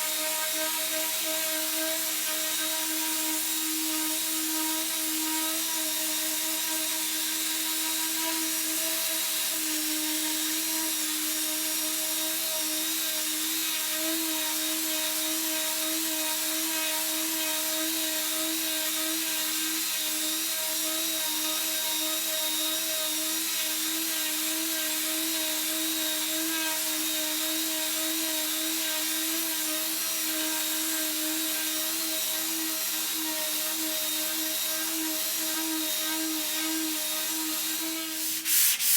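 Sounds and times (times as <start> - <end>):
electric power tool whining: 0.0 - 38.4
hiss: 36.7 - 38.9.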